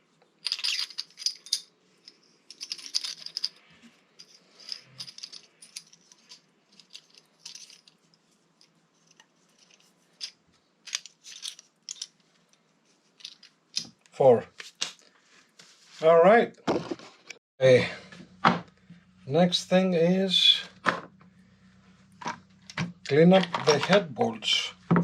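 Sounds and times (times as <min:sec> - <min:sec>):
metal parts clinking and rattling: 0:00.4 - 0:12.6, 0:13.2 - 0:14.0, 0:22.2 - 0:25.0.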